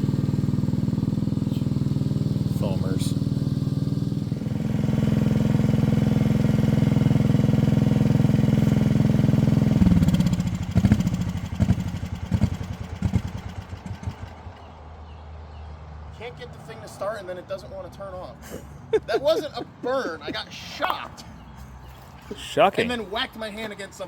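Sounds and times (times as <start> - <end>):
engine chugging and coughing: 0.0 - 14.7, 18.3 - 21.8
engine running: 0.0 - 14.8.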